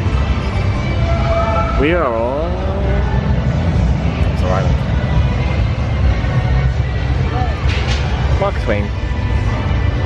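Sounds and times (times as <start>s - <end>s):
music playing: 0.0s - 10.0s
steady low rumble: 2.0s - 10.0s.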